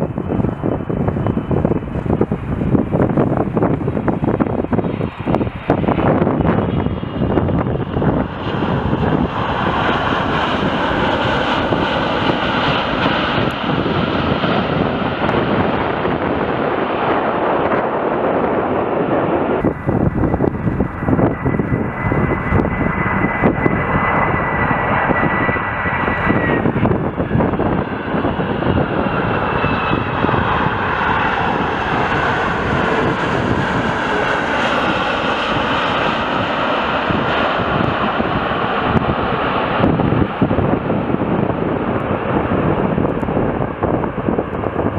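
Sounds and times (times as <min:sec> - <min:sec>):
jet airliner engines passing: 0:00.0 - 0:44.9
thin steady whine: 0:19.6 - 0:24.9.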